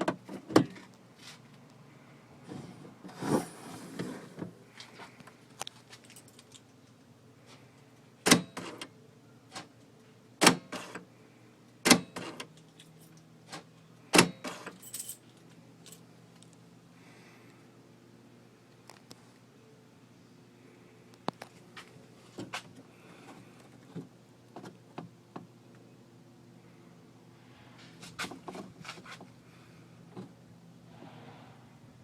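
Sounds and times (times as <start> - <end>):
keys jangling on key ring: 5.9 - 6.7, 14.8 - 16.0.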